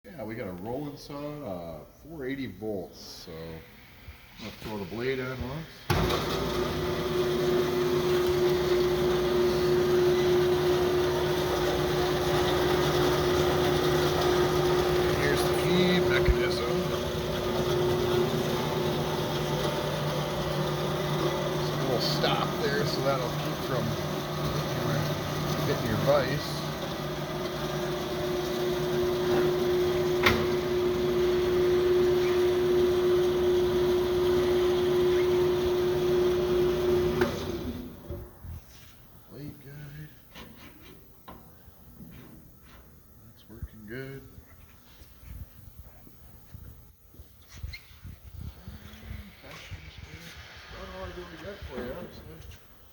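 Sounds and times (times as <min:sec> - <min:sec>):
bandsaw running: 0:05.9 - 0:38.1.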